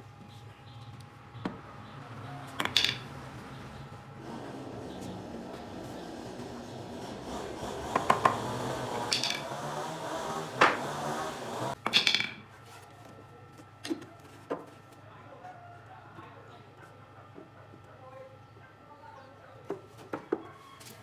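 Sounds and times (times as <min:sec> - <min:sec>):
wooden parts sliding and rubbing: 0:04.2 - 0:11.8
sharp knocks: 0:07.9 - 0:09.5.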